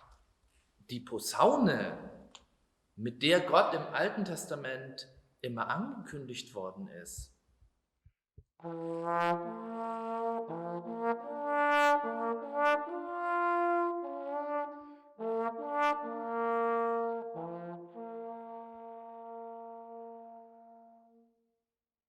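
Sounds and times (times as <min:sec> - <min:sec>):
trombone music: 0:08.6 - 0:21.2.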